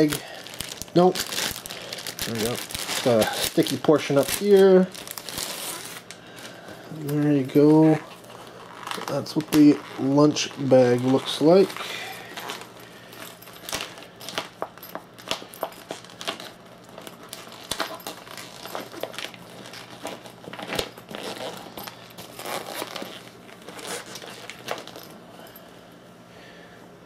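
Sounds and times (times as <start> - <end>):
sharp plastic crackles: 0.0 - 6.6, 8.7 - 12.0
plastic wrapping crinkling: 0.0 - 25.1.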